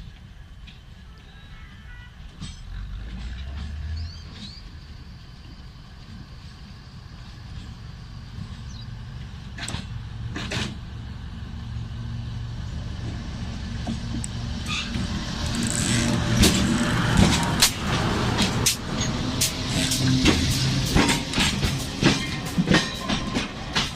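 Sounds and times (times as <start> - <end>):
train rumble: 0.0 - 23.9
wheels clanking over rail joints: 2.2 - 4.9, 7.2 - 11.9, 12.8 - 23.9.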